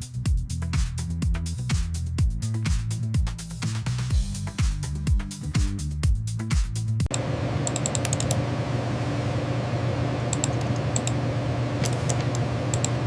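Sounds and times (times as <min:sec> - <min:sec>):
steady low hum: 0:07.1 - 0:13.0
computer keyboard typing: 0:07.6 - 0:08.4, 0:10.3 - 0:11.2, 0:11.8 - 0:13.0.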